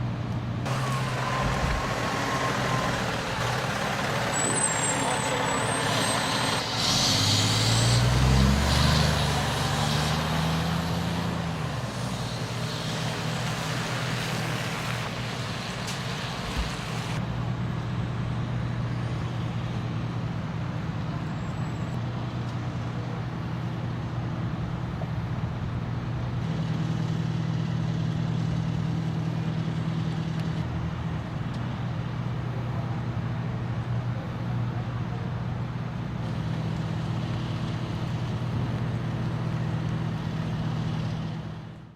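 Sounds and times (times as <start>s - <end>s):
heavy vehicle engine revving: 0.6s - 17.2s.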